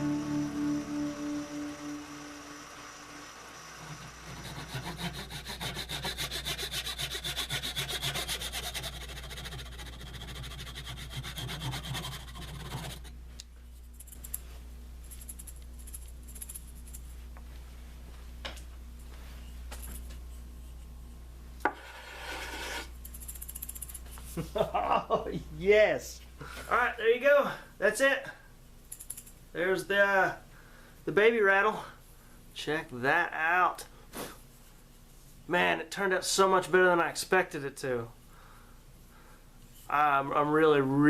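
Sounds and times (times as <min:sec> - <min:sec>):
lathe humming: 0:00.0 - 0:06.8
rubbing on spinning wood: 0:03.8 - 0:13.1.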